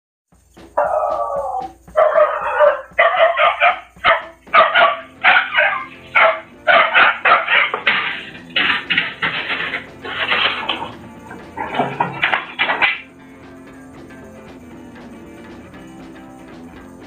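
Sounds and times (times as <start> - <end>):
dog barking: 0.8 - 9.2.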